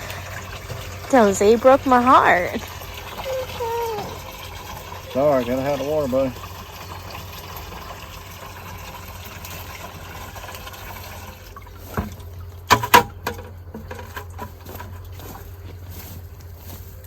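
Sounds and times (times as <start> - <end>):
water running: 0.0 - 14.8
sharp knocks: 12.7 - 13.6.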